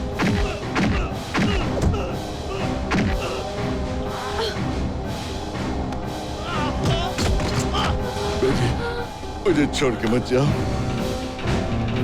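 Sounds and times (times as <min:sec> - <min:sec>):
dramatic film score: 0:00.0 - 0:12.0.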